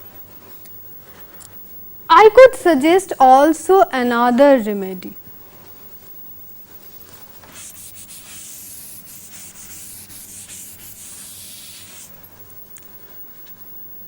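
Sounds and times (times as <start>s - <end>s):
handwriting scratching: 7.4s - 12.2s.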